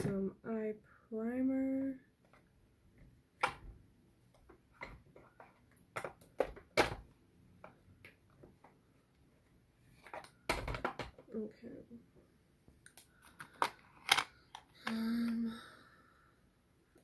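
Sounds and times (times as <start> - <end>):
plastic containers clicking and knocking: 4.3 - 8.8, 10.0 - 11.4.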